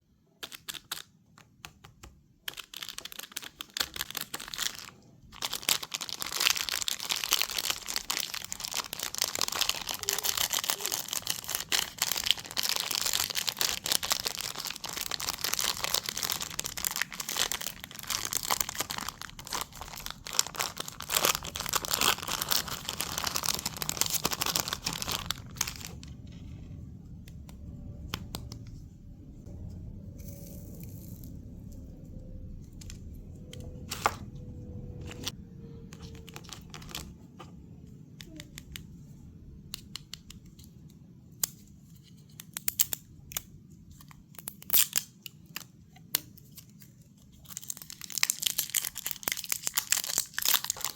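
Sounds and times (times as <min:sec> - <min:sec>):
candy wrapper crinkling: 0:00.3 - 0:01.2, 0:02.4 - 0:26.6, 0:34.9 - 0:37.3, 0:42.0 - 0:50.9.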